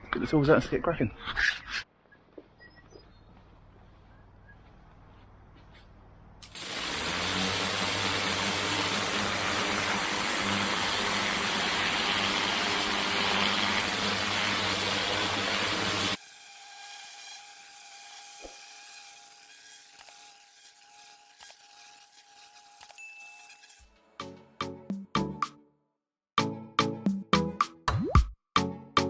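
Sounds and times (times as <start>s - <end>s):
high-pressure water jet hissing: 6.4s - 16.2s
pressure washer engine hum: 6.4s - 16.2s.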